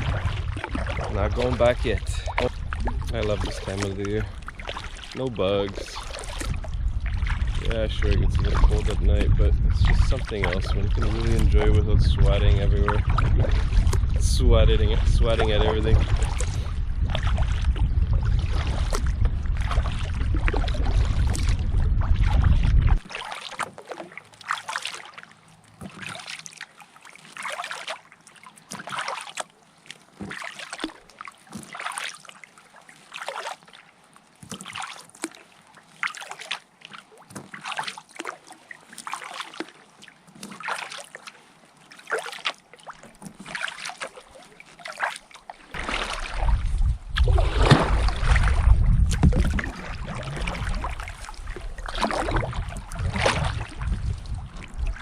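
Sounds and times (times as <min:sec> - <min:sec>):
paddle splashing in water: 0:00.0 - 0:55.0.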